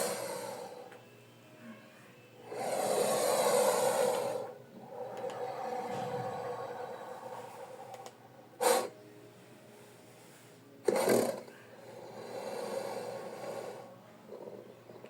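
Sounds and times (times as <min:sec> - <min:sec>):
crocodile hissing exhale: 0:00.0 - 0:00.9, 0:02.5 - 0:09.0, 0:10.9 - 0:13.9
rasping breath: 0:02.5 - 0:09.0, 0:10.9 - 0:14.7
short sharp snort: 0:08.6 - 0:08.9, 0:10.9 - 0:11.4.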